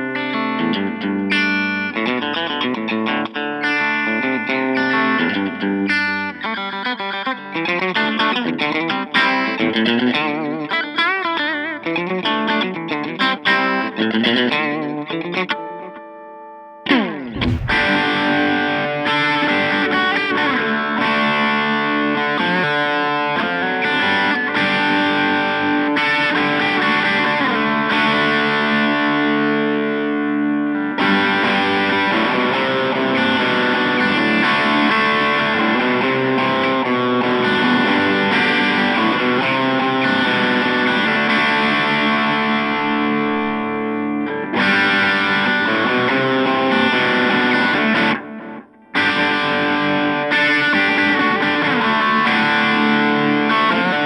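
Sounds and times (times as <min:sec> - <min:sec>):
electric guitar through practice amp: 0:00.0 - 0:16.5, 0:20.0 - 0:54.0
guitar sliding sweep: 0:17.3 - 0:18.1.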